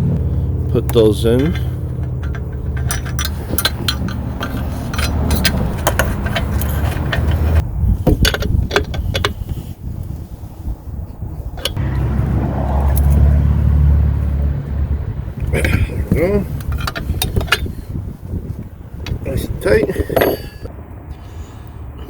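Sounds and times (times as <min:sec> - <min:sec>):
low wind rumble on microphone: 0:00.0 - 0:22.0
wrench clinking on metal parts: 0:00.6 - 0:09.7, 0:11.5 - 0:11.8, 0:15.4 - 0:20.7.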